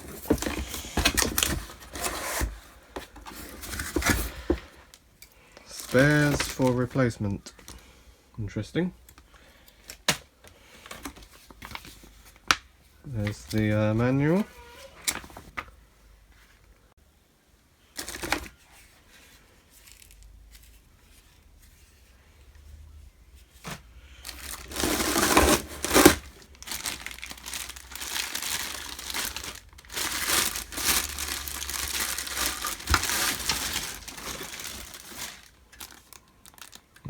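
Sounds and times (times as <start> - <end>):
packaging crinkling and rustling: 0.0 - 7.8, 9.1 - 15.8, 17.9 - 21.2, 23.6 - 37.0.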